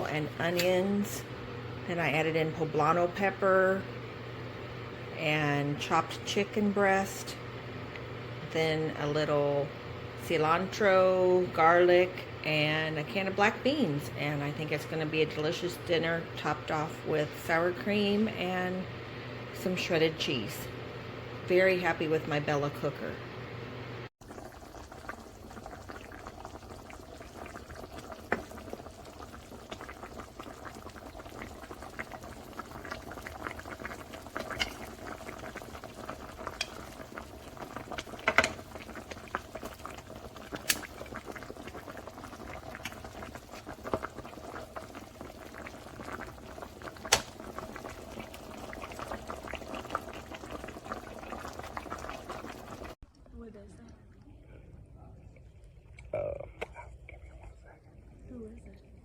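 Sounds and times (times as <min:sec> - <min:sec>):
food simmering with bubbling crackle: 0:00.0 - 0:08.5, 0:23.3 - 0:53.4.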